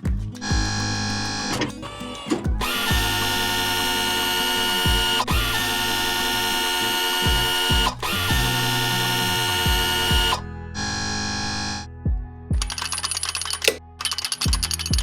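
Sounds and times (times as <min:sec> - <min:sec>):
upbeat synth music: 0:00.1 - 0:15.0
buzzing ratchet-like sound effect: 0:00.4 - 0:11.8.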